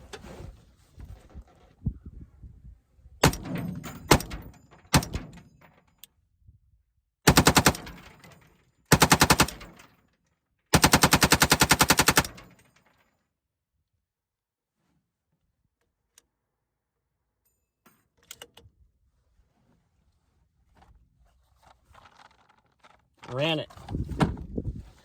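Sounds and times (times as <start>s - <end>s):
automatic gunfire bursts: 7.3s - 8.0s, 8.9s - 9.6s, 10.8s - 12.4s.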